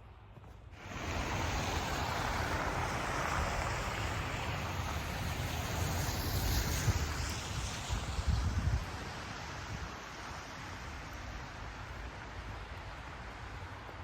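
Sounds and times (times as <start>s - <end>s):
snowstorm wind rushing: 0.8s - 13.8s
wind buffeting microphone: 0.9s - 10.0s.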